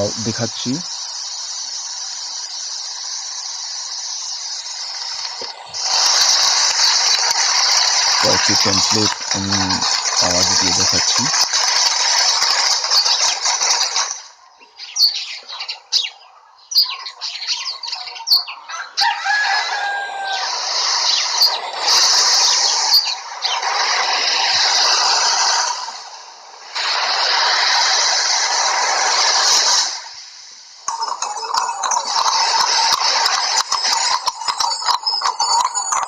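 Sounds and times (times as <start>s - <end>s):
steady rushing hiss: 0.0s - 14.4s, 19.0s - 36.0s
wings flapping: 4.9s - 14.3s
rooster crowing: 18.7s - 20.8s.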